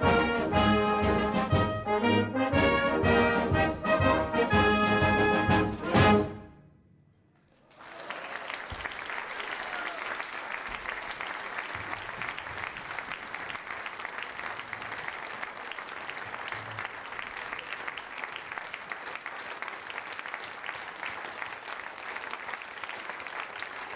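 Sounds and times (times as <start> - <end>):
audience applauding: 7.4 - 23.9.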